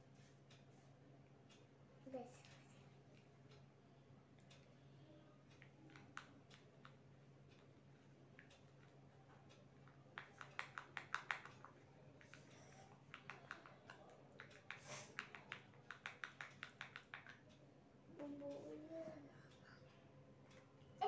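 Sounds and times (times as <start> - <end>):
rapid small clicks: 4.3 - 19.8.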